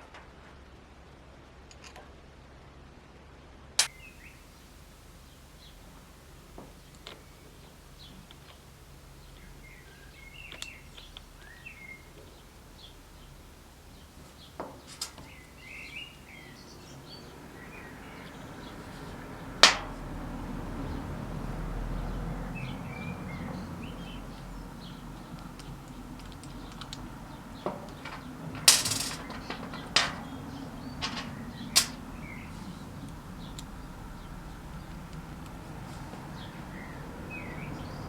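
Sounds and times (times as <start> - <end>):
sharp clicks and knocks: 19.6 - 20.0, 25.2 - 32.3.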